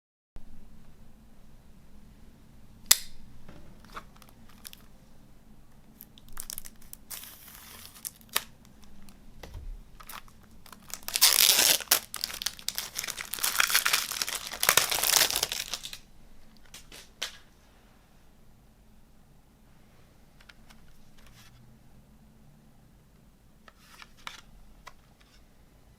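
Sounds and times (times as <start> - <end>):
plastic shrink-wrap tearing and crinkling: 3.9 - 4.9, 6.0 - 8.6, 10.0 - 16.0.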